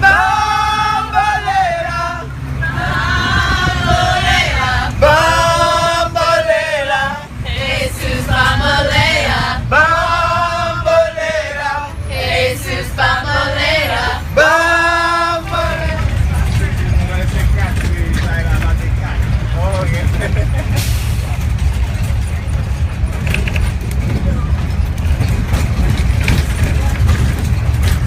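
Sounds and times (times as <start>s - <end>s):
group of people singing in unison: 0.0s - 16.6s
bus engine rumble: 0.0s - 28.0s.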